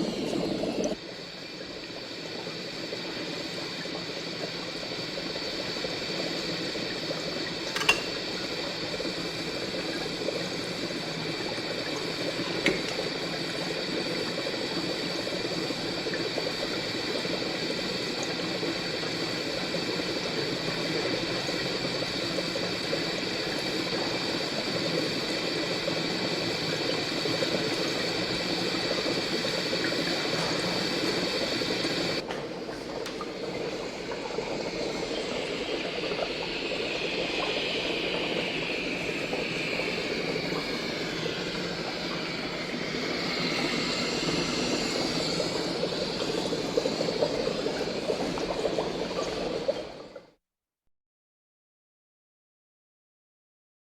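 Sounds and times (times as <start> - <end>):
gas burner hissing: 0.0 - 50.0
water boiling and bubbling: 0.0 - 50.4.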